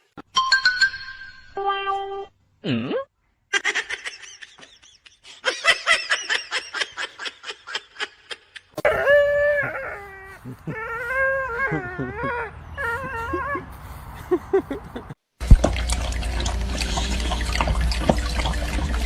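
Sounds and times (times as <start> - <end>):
dog howling: 8.8 - 13.7.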